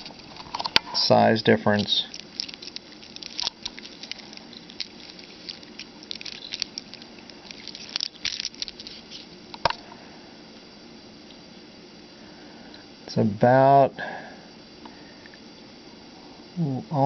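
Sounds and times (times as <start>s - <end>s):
metal watch bracelets rattling: 2.1s - 9.2s.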